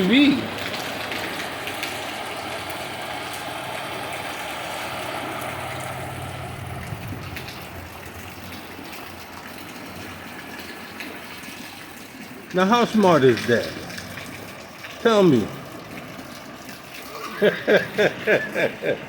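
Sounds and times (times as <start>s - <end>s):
vehicle engine running: 0.0s - 11.3s
water rushing: 0.0s - 19.0s.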